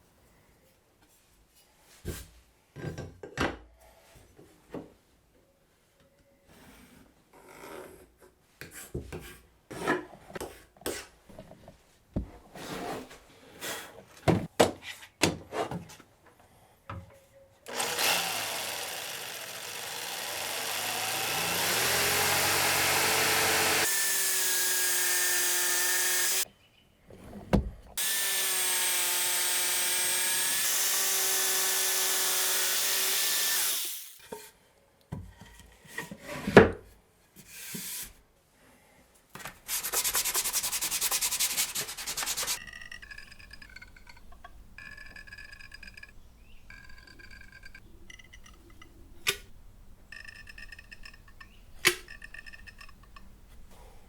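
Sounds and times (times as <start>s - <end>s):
power tool whining on wood: 17.7s - 26.4s, 28.0s - 34.2s.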